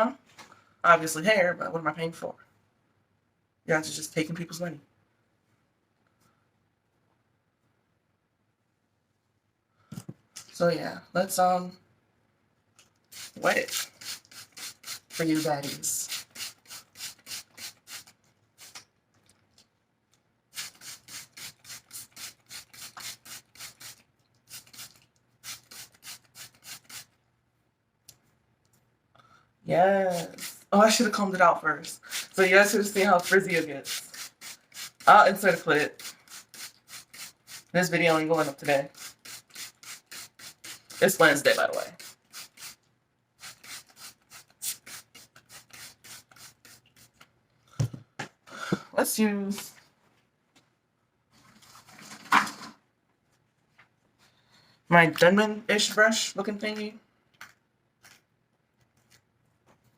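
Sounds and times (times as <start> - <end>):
spray bottle spritzing water: 13.1 - 18.8, 20.5 - 27.2, 30.1 - 30.7, 32.0 - 42.8, 43.4 - 47.2.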